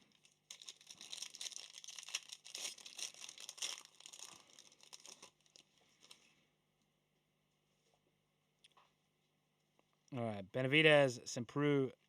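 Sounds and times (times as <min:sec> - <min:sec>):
wrapper tearing and crinkling: 0:00.0 - 0:06.3.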